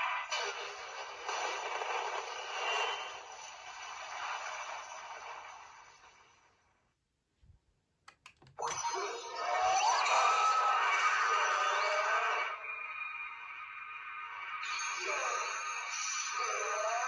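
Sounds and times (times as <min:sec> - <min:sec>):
toy hissing sound effect: 0:14.6 - 0:17.0.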